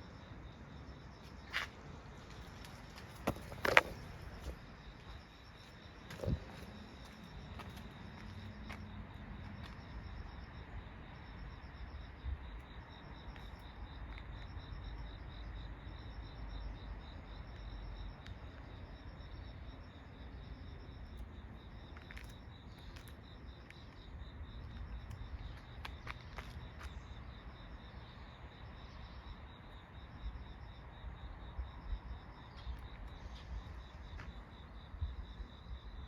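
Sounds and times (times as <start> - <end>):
crickets chirping: 0.0 - 36.0.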